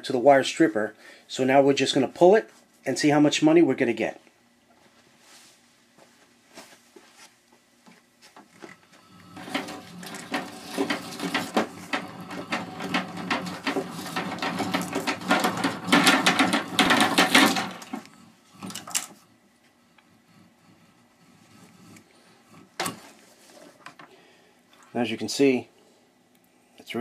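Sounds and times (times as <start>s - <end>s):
wire rattling and scraping: 8.5s - 24.1s.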